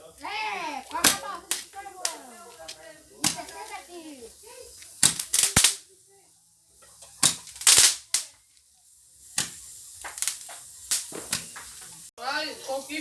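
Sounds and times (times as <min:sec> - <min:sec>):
fireworks bangs and pops: 0:00.6 - 0:06.0, 0:06.7 - 0:12.1.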